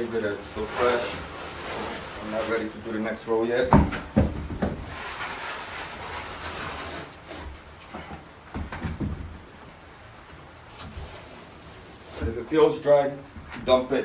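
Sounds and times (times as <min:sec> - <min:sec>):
trowel scraping mortar: 0:00.0 - 0:02.8, 0:04.7 - 0:07.7
knocks: 0:03.6 - 0:05.0.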